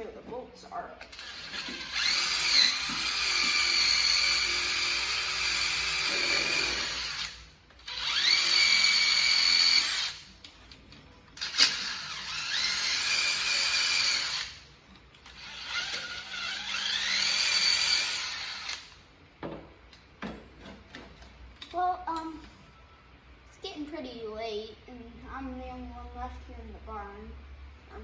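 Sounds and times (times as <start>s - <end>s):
cordless impact gun: 1.1s - 10.2s, 11.4s - 14.6s, 15.2s - 19.0s.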